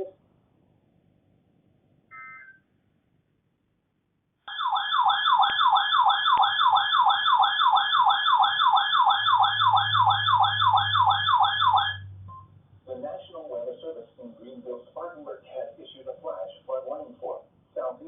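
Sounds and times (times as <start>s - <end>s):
electronic warbling alert siren: 4.5s - 12.3s
low hum: 9.2s - 13.3s.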